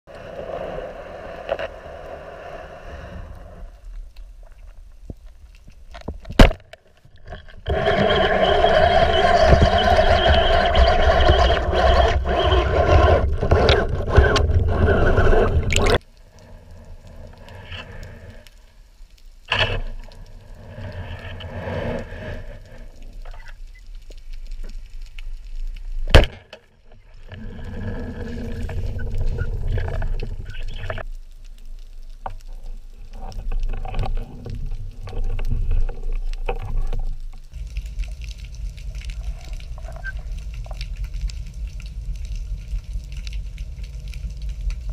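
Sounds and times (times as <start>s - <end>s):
muffled underwater water noise: 0.1s - 44.9s.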